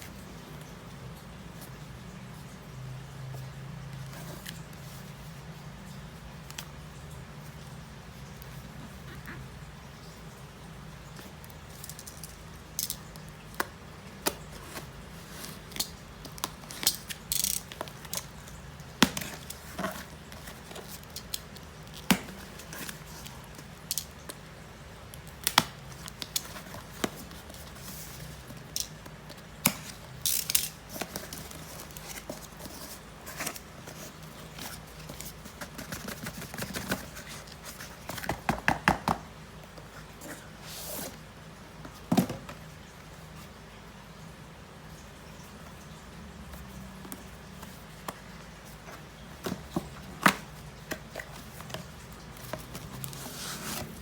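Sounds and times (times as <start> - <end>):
packaging clicks and crinkles: 11.6 - 24.5, 25.1 - 38.8.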